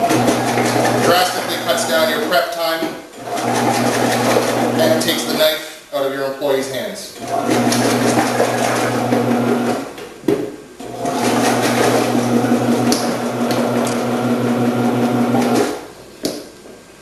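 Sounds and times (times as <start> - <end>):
vegetable cutter motor hum: 0.0 - 2.2, 3.2 - 5.3, 7.2 - 9.9, 10.9 - 15.8.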